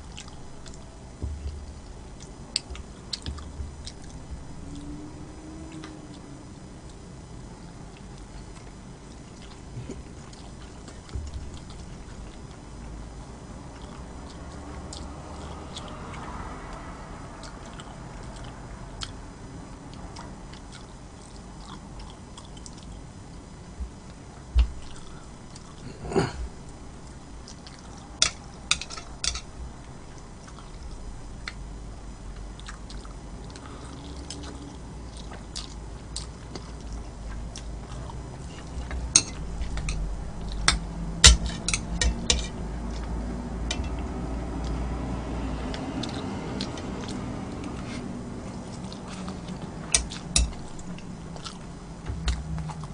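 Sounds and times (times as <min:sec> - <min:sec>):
chewing: 0:00.0 - 0:13.0, 0:13.7 - 0:19.2, 0:19.8 - 0:23.1, 0:23.8 - 0:31.6, 0:32.4 - 0:45.0, 0:45.6 - 0:52.9
utensils clicking against dish: 0:40.6 - 0:42.6, 0:50.0 - 0:50.6.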